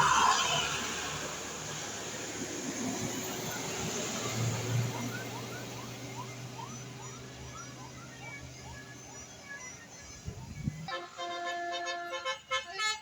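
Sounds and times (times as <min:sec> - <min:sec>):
tyres hissing on wet road: 0:00.0 - 0:06.7
traffic engine drone: 0:00.0 - 0:13.0.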